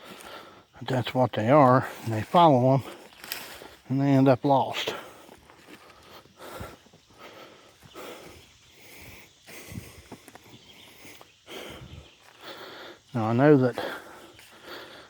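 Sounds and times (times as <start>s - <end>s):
breathing and sniffing: 0.0s - 0.8s, 4.8s - 15.0s
footsteps through leaf litter: 1.6s - 6.0s.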